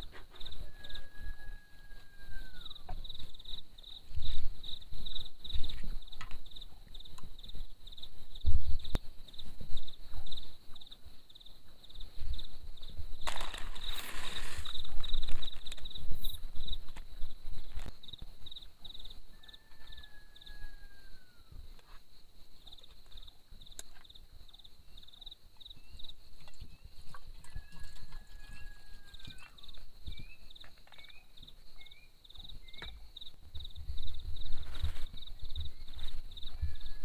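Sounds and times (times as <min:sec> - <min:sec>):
insect chirping: 0:00.0 - 0:37.0
rustle: 0:00.0 - 0:37.0
thin whistled calls: 0:24.9 - 0:33.0.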